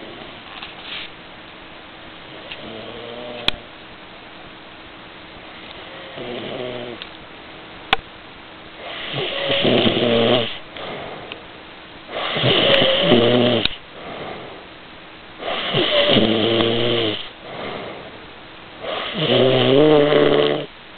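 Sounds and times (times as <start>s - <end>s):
person snoring: 2.6s - 3.6s, 5.9s - 7.0s, 8.8s - 11.3s, 12.1s - 14.6s, 15.4s - 18.1s, 18.8s - 20.7s.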